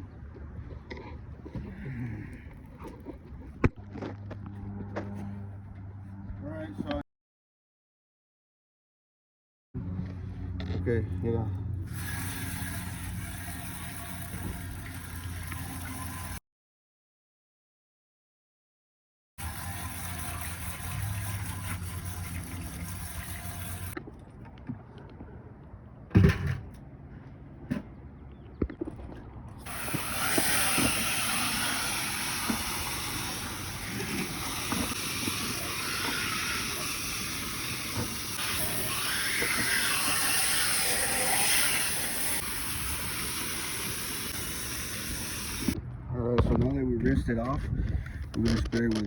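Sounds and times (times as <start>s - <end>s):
water spraying from a hose: 11.9s - 16.4s, 19.4s - 24.0s, 29.6s - 45.8s
steady hum: 29.7s - 45.8s.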